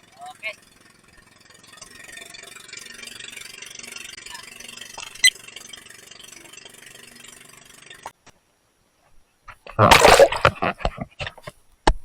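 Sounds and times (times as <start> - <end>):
boat engine running: 0.0 - 8.2.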